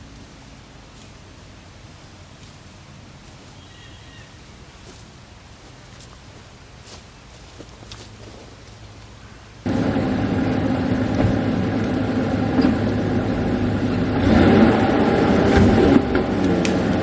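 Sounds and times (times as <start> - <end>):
truck engine revving under load: 9.6 - 17.0.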